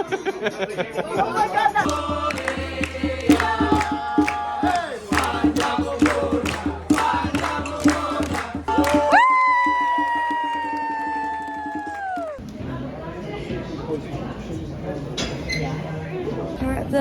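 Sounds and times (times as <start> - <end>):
song with vocal over beat: 1.8 - 9.8.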